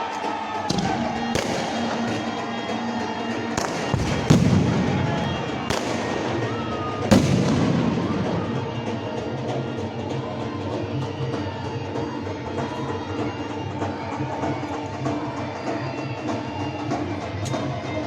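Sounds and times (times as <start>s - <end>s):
music playing: 0.0s - 18.0s
fireworks bangs: 0.6s - 9.2s.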